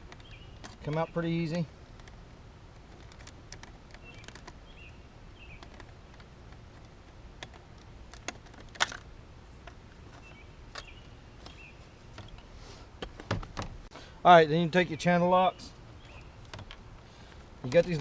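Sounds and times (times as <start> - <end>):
low steady hum: 0.0 - 18.0
screwdriver and plastic parts clicking: 2.8 - 4.6, 5.6 - 12.4.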